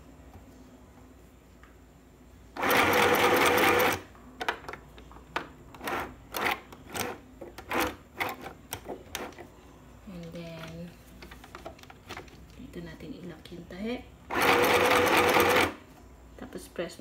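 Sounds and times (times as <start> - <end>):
sewing machine stitching: 2.6 - 4.0, 5.8 - 9.4, 14.3 - 15.8.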